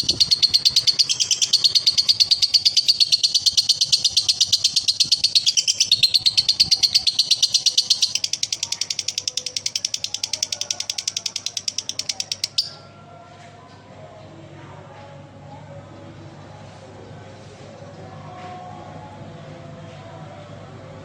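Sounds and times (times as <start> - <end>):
lovebird shrill chatter: 0.0 - 12.8.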